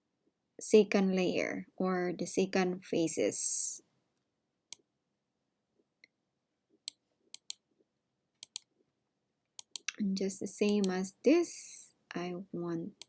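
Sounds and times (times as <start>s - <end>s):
computer mouse clicking: 6.9s - 7.6s, 8.4s - 8.7s, 9.6s - 10.0s.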